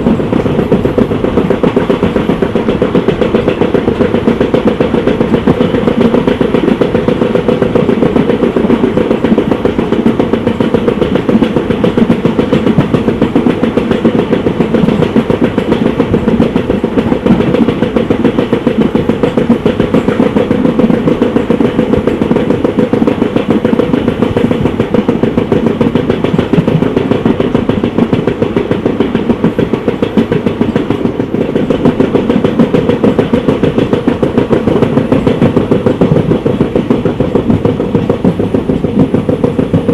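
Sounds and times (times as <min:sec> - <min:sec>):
train wheels rumbling and clattering: 0:00.0 - 0:39.9.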